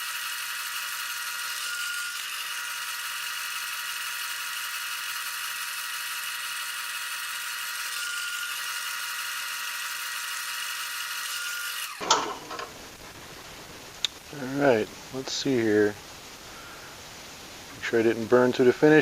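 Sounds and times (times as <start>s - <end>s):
wood lathe whirring: 0.0s - 13.0s.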